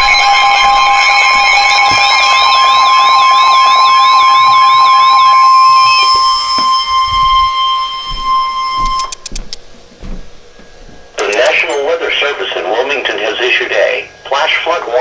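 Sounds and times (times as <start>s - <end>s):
loud steady high tone: 0.0s - 9.5s, 10.6s - 15.0s
warbling alarm: 0.0s - 15.0s
sharp clicks: 8.9s - 9.7s, 11.2s - 11.7s.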